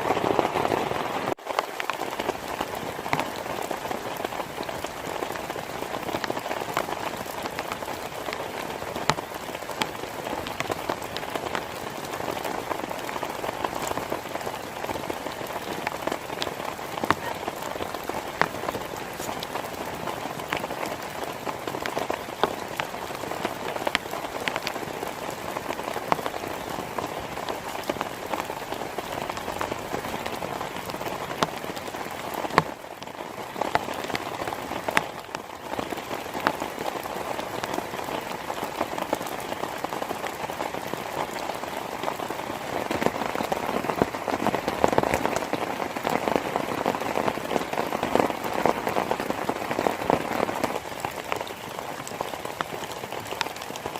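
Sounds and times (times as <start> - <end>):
heavy rain falling: 0.0 - 53.9.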